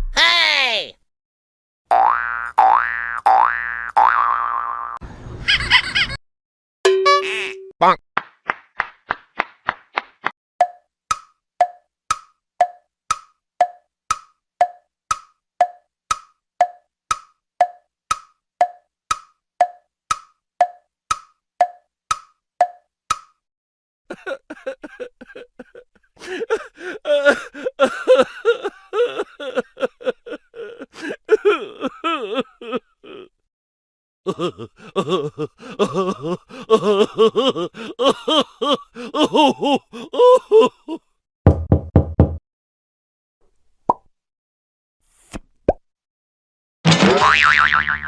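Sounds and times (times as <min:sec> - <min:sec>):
wood-block tick-tock: 0:10.6 - 0:23.4.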